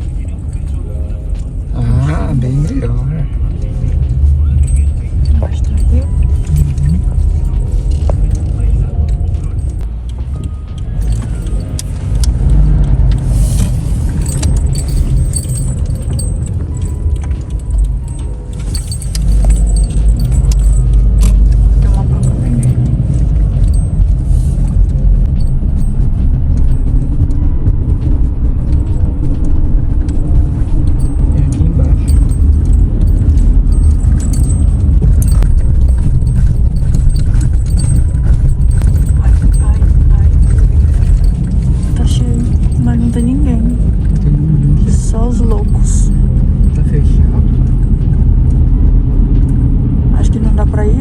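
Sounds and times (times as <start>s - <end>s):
motorcycle engine and road noise: 0.0s - 51.0s
small rattles and clicks: 3.7s - 50.8s
wind buffeting microphone: 10.8s - 51.0s.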